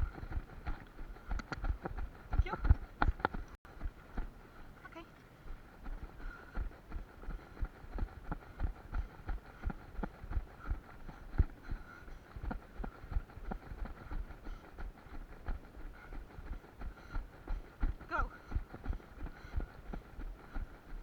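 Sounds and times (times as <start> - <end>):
running footsteps thudding: 0.0 - 4.3.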